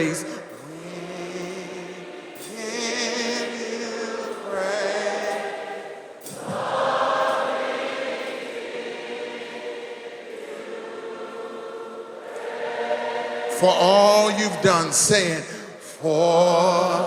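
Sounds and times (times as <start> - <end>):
congregation singing: 0.0 - 17.0
musical accompaniment: 0.0 - 17.0.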